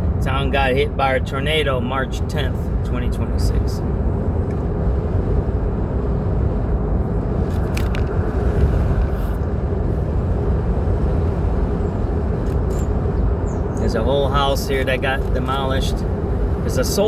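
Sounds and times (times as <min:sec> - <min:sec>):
car road and engine noise: 0:00.0 - 0:17.0.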